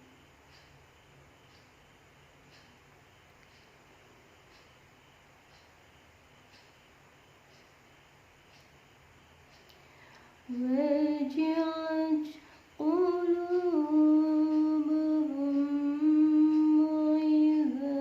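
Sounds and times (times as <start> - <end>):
person chanting melodic recitation: 10.5 - 18.0.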